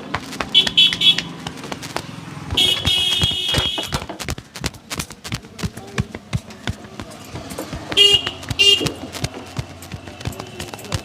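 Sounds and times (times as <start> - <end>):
vehicle horn toots: 0.5 - 1.4, 2.5 - 4.1, 7.9 - 9.1.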